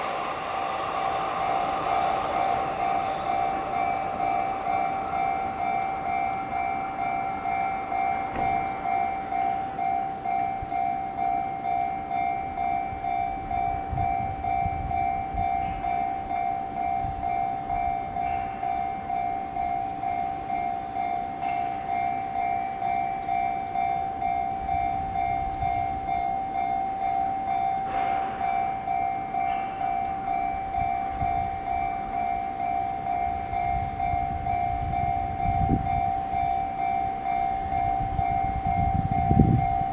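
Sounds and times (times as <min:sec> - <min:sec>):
trains rumbling past: 0:00.0 - 0:39.9.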